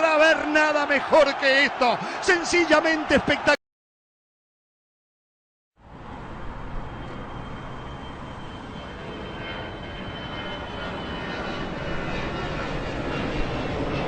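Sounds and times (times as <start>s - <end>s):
rumbling vehicle noise: 5.8s - 13.8s.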